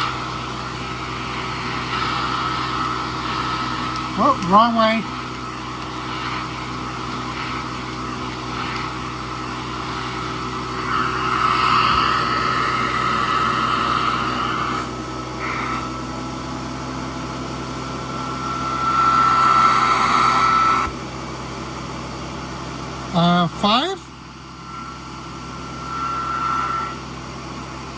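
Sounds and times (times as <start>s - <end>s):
vacuum cleaner running: 0.0s - 27.9s.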